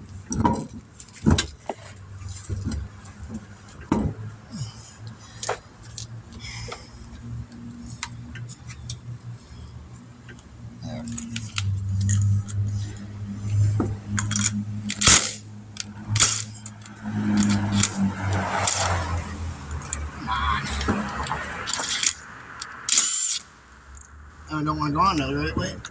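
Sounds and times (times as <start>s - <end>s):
steady low hum: 0.0s - 24.6s
metal clinking of lug nuts: 0.1s - 4.3s, 11.0s - 20.1s, 20.7s - 24.2s.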